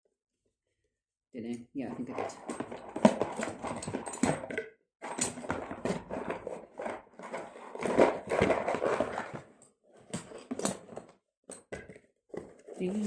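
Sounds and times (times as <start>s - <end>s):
packaging handling noise: 5.0s - 11.1s.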